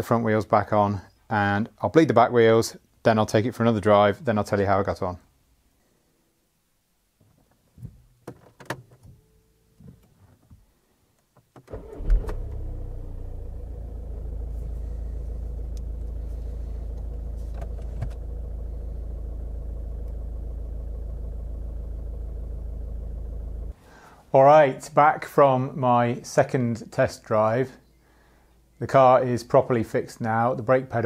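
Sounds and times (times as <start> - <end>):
car engine starting and running: 11.6 - 24.2.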